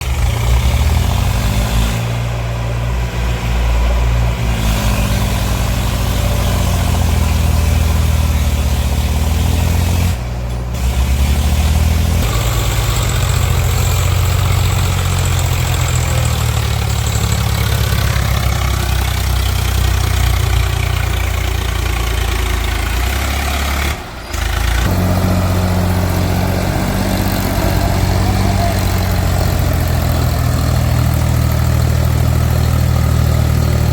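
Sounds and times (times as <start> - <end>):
heavy diesel engine running: 0.0 - 33.9.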